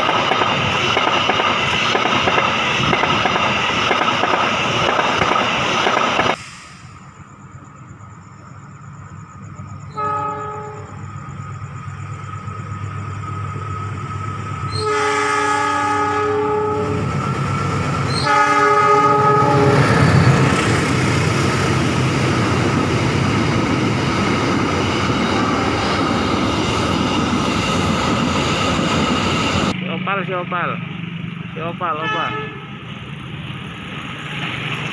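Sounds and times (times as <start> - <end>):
train engine and wheels rumbling: 0.0 - 34.9
locomotive air horn blasts: 9.9 - 10.9, 14.7 - 17.0, 18.2 - 19.9, 32.0 - 32.7.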